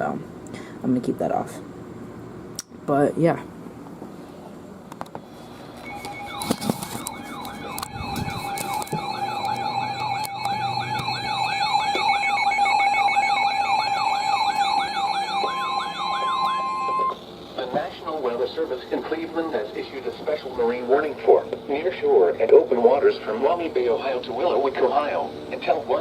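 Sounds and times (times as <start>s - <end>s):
steady single-pitch tone: 5.7s - 17.2s
electronic siren alarm wailing: 5.8s - 17.3s.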